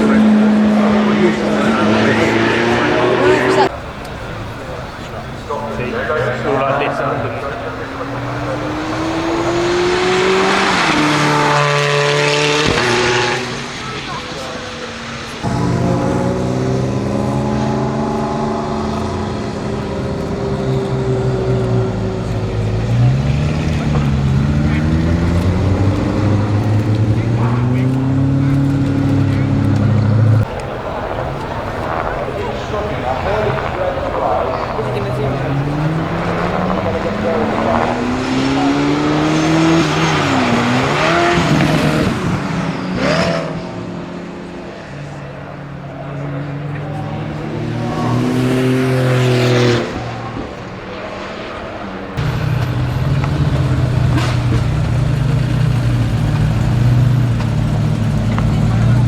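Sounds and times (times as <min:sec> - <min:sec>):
car engine running at steady revs: 0:15.3 - 0:42.4, 0:52.2 - 0:59.0.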